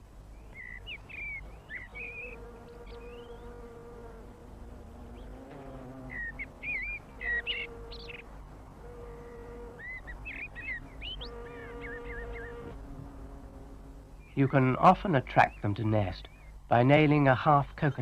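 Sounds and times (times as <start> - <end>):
buzzing hum: 0.0 - 14.4
small songbird chirping: 0.3 - 3.7, 5.1 - 8.3, 9.2 - 12.7.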